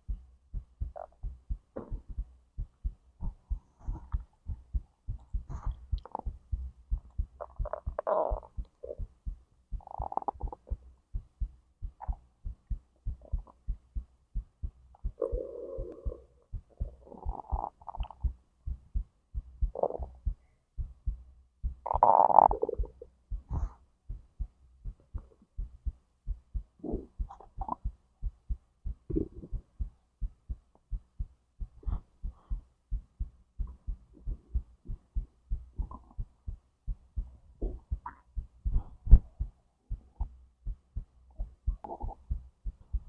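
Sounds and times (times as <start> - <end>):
heartbeat: 0.0 - 43.0
stomach gurgles: 7.4 - 9.1, 9.8 - 10.8, 15.0 - 18.3, 19.7 - 20.2, 21.8 - 23.1, 26.8 - 27.9, 29.1 - 29.6, 41.4 - 42.4.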